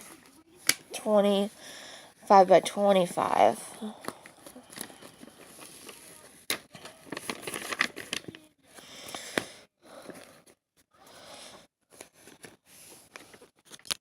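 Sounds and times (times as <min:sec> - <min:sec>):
canvas and plastic packaging rustling: 0:04.3 - 0:08.6.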